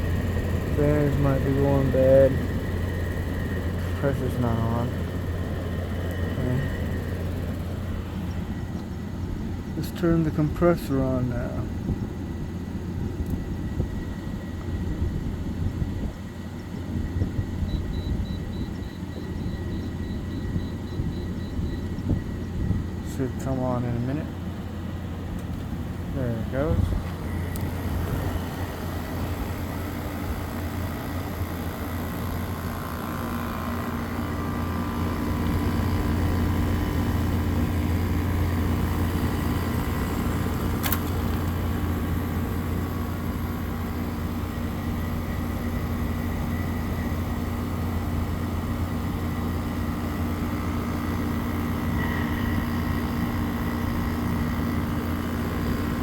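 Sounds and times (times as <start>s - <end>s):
air conditioner compressor hum: 0.0s - 56.0s
fan and moving air: 0.0s - 56.0s
sharp click: 40.7s - 41.5s.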